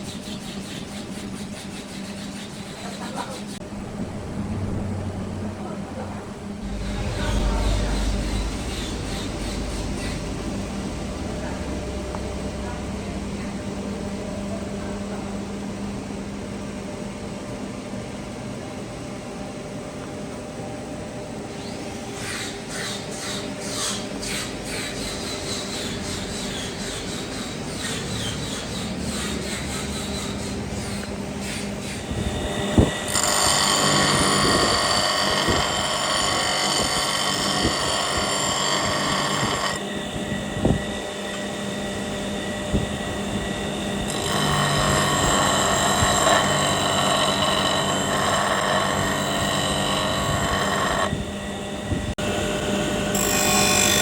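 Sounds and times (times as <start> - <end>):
lathe motor hum: 0.0 - 16.8, 22.0 - 54.0
lathe tool cutting wood: 22.3 - 54.0.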